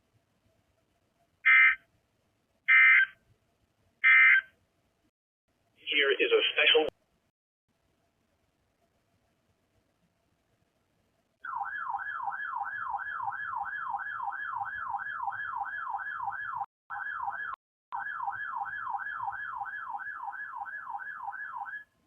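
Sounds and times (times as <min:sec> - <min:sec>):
warbling electronic siren alarm: 0:02.7 - 0:03.2, 0:11.4 - 0:22.0.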